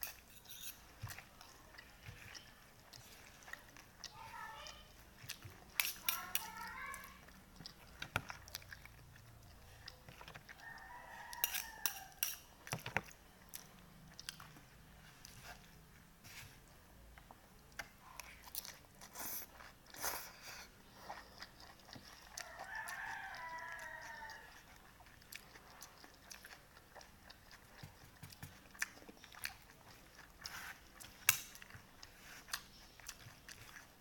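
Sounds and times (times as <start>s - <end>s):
chewing clicks and taps: 1.0s - 14.7s, 21.2s - 30.4s
rooster crowing: 10.6s - 12.2s, 22.4s - 24.5s.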